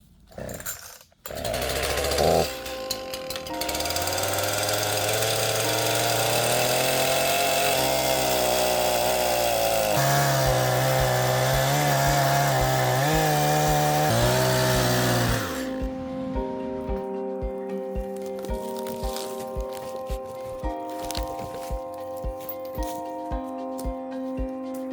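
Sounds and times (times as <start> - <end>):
chainsaw cutting wood: 0.3 - 16.9, 18.0 - 23.8
background music with beat: 10.4 - 24.9.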